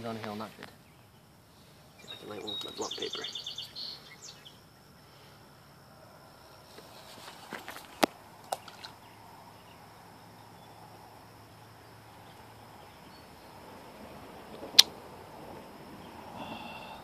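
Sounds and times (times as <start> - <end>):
insect chirring: 0.0 - 17.0
sharp crack: 14.6 - 15.0.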